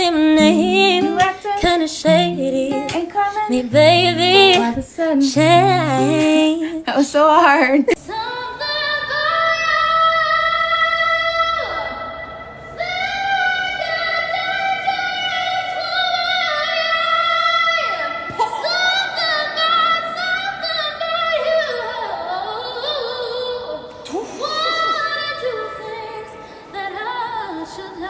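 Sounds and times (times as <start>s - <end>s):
high voice singing wordless notes: 0.0s - 7.2s.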